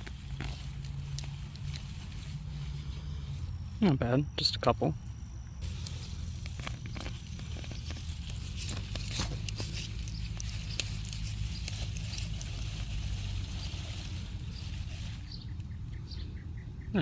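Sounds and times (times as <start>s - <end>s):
small irregular clicks: 0.0s - 2.2s, 5.4s - 16.1s
low steady rumble: 0.0s - 17.0s
rustling of soil and leafy plants: 0.0s - 17.0s.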